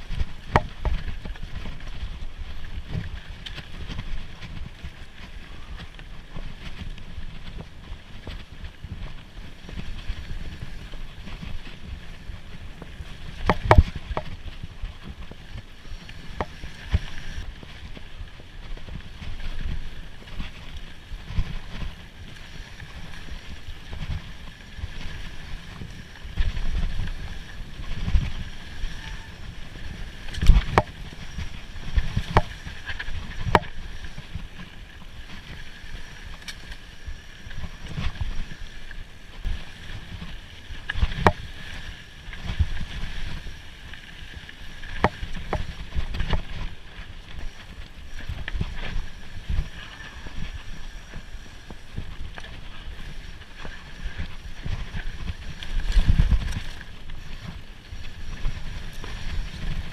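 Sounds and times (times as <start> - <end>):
bike knocks and rattles: 0.0 - 18.0, 18.7 - 35.6
bike tyres rumbling: 0.0 - 59.9
wind on microphone: 0.0 - 59.9.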